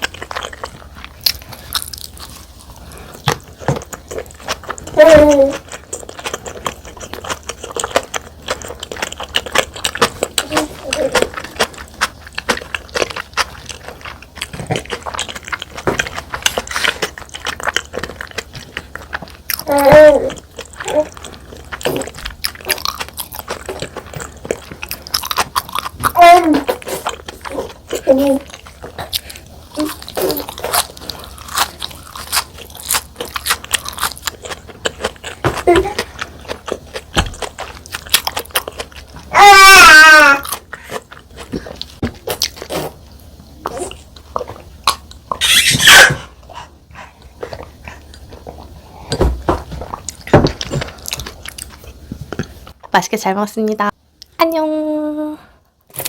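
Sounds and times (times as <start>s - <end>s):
chewing food: 0.0s - 53.0s
squeaky toy squeak: 45.4s - 46.2s.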